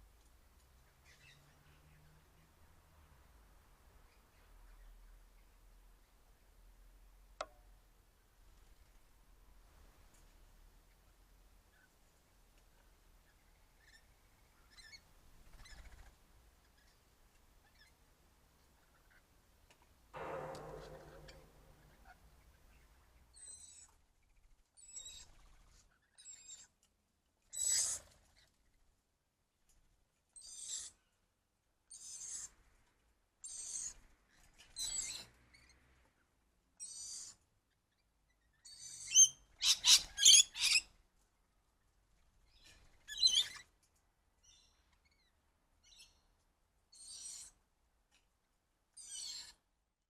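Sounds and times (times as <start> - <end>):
birds high-pitched calls: 30.4 - 31.0, 38.6 - 40.9, 42.5 - 43.7, 47.0 - 47.6, 49.0 - 49.6.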